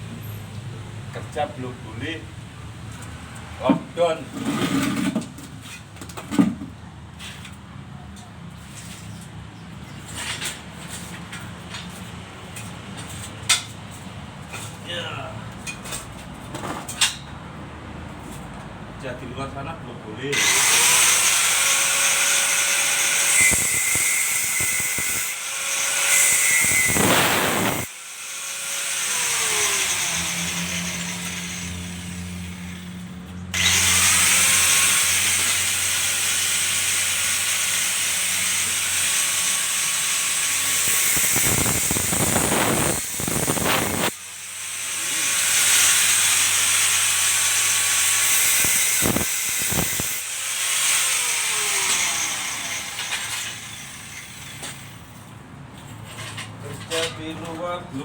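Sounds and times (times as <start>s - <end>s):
electric power tool running: 20.3s - 32.7s, 33.6s - 53.8s
motor winding down: 26.1s - 27.9s, 33.6s - 35.6s, 40.8s - 44.1s, 48.2s - 50.2s.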